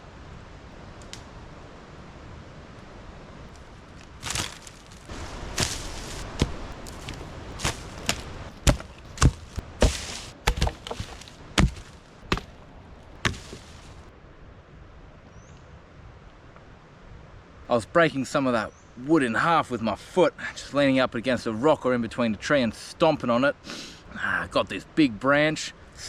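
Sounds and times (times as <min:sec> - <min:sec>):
dry branches snapping underfoot: 0:03.5 - 0:14.0
wood splintering rustle: 0:03.5 - 0:14.1.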